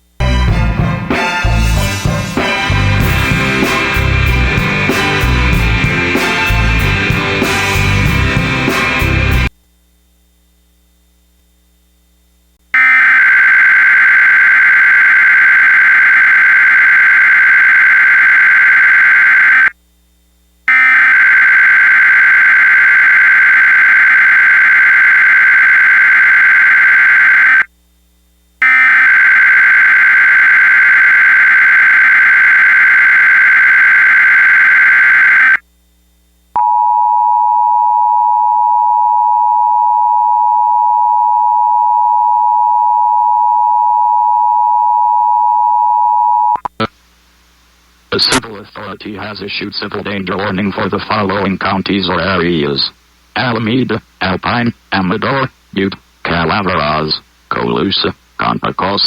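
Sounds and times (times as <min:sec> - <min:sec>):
digital data burst screech: 0:12.8 - 0:19.7, 0:20.8 - 0:27.7, 0:28.7 - 0:35.6.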